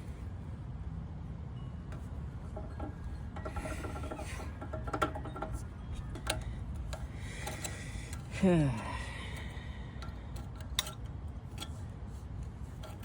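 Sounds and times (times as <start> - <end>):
sharp metal clicks: 2.6 - 8.4, 9.3 - 11.9.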